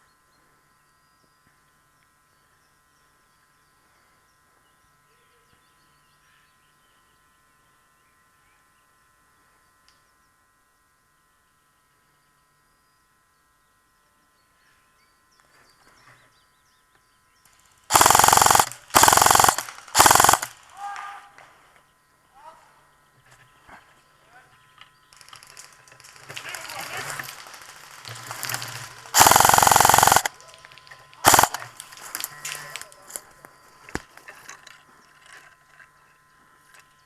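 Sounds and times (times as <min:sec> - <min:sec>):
airsoft rifle full-auto bursts: 0:17.9 - 0:21.0, 0:26.6 - 0:30.4, 0:31.2 - 0:33.2.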